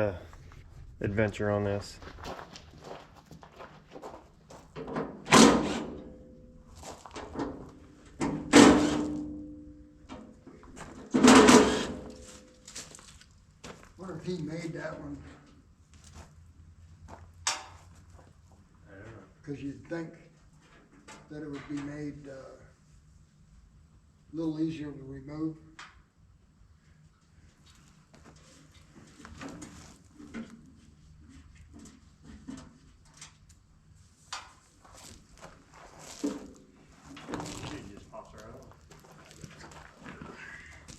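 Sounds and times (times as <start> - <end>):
steady low hum: 0.0 - 4.8
loud metal clangs: 5.3 - 6.3, 8.2 - 9.6, 11.1 - 12.5.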